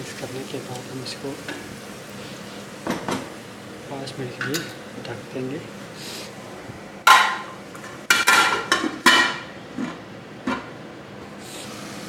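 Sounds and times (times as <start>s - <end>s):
metal cookware clanking: 4.4s - 4.8s, 7.0s - 10.7s.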